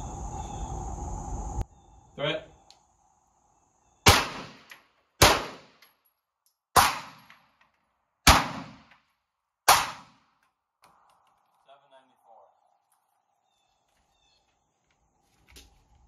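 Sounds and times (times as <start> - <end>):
pistol shots with echo: 4.0 - 5.8, 6.8 - 7.4, 8.2 - 9.0, 9.7 - 10.2.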